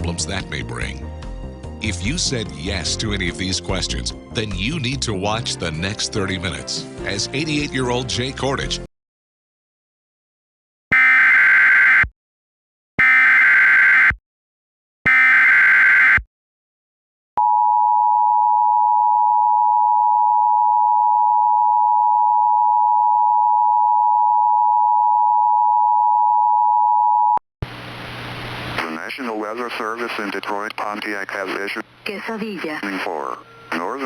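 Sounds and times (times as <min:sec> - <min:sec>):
digital data bursts: 0:31.3 - 0:34.0.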